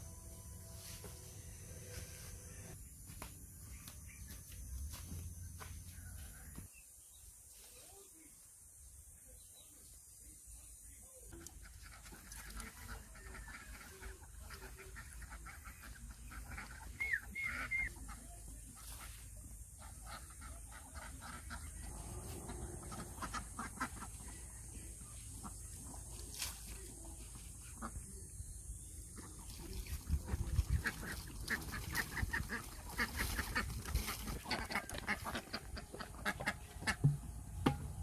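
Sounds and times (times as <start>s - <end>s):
waterfowl calling: 11.4s - 19.1s, 19.8s - 24.5s, 29.2s - 37.1s
wind rumble on microphone: 29.8s - 31.2s.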